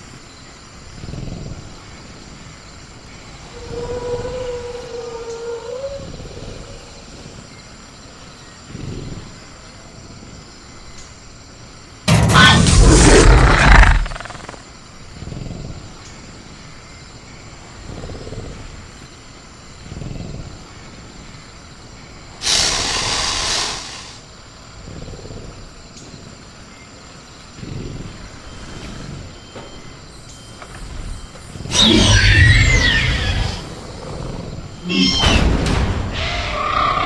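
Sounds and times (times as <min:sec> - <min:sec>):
crickets chirping: 0:00.0 - 0:37.0
creature growling: 0:12.1 - 0:14.6, 0:22.4 - 0:24.2, 0:31.7 - 0:35.2
creature hissing burst: 0:12.1 - 0:14.6, 0:22.4 - 0:24.2, 0:31.7 - 0:33.7.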